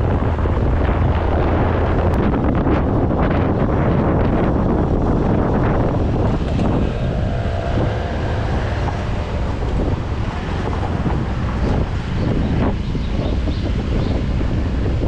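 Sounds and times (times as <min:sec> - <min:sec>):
road noise: 0:00.0 - 0:15.0
wind buffeting microphone: 0:00.0 - 0:15.0
scooter engine: 0:05.6 - 0:12.3.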